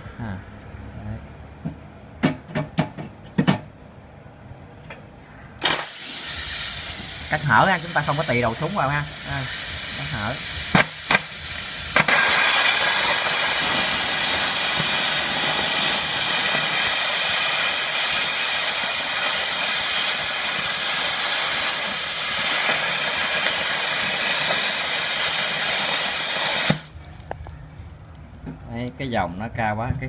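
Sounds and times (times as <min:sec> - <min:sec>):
plasma cutter hissing: 0:05.6 - 0:26.9.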